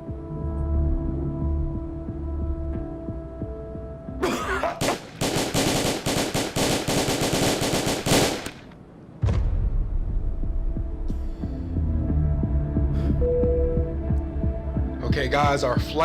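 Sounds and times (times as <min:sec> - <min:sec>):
rapid sharp bangs: 0:04.8 - 0:08.8
low throbbing hum: 0:09.3 - 0:15.0.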